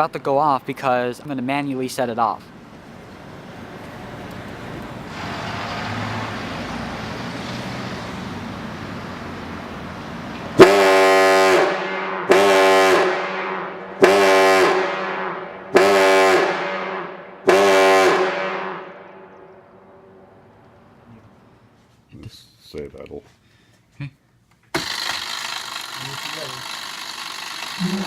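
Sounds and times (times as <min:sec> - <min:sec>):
deep fire horn blasts: 0:10.6 - 0:20.1.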